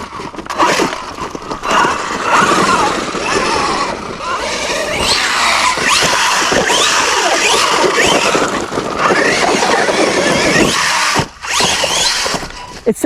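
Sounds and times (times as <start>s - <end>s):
electric motor whining: 1.8s - 8.3s
steady rough noise: 4.0s - 7.0s.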